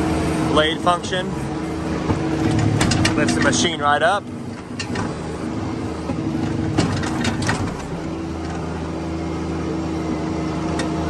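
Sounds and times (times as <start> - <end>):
mini excavator diesel engine: 0.0 - 11.0
knocks and clanks: 0.1 - 8.6.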